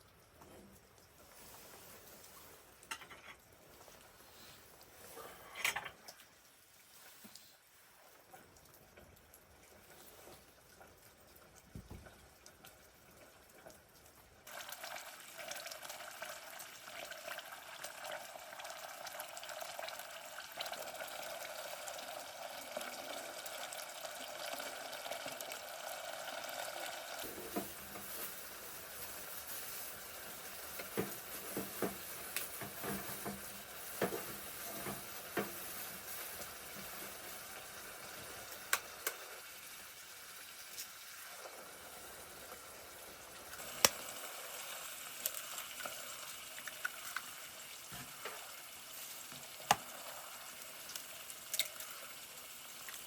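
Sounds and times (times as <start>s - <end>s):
food sizzling in a pan: 11.7s - 53.0s.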